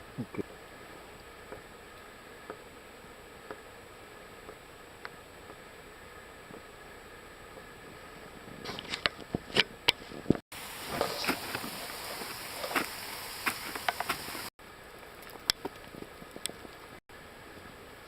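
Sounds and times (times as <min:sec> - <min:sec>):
steady hiss: 0:10.1 - 0:18.0
ice tools striking ice: 0:10.8 - 0:14.5.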